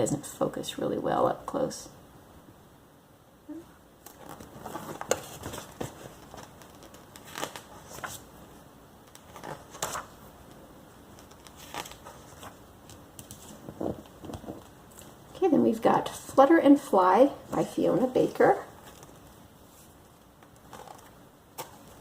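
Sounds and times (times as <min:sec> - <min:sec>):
magazine pages rustling: 0:04.0 - 0:15.3, 0:17.5 - 0:22.0.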